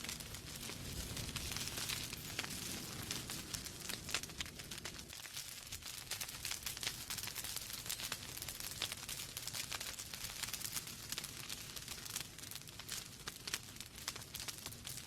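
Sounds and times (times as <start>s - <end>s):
wood fire crackling: 0.0s - 15.0s.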